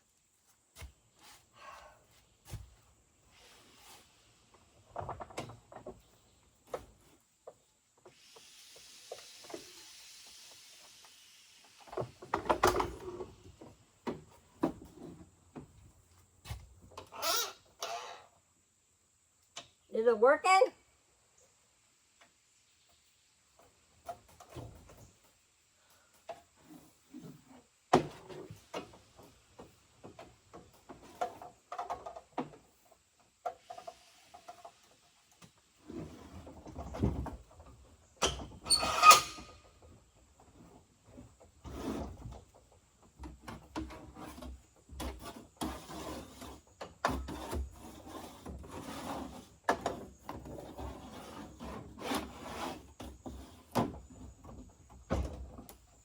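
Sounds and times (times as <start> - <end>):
ringing squeak: 17.1 - 18.2, 38.3 - 39.6
clicks knocks and scraping: 35.4 - 56.0.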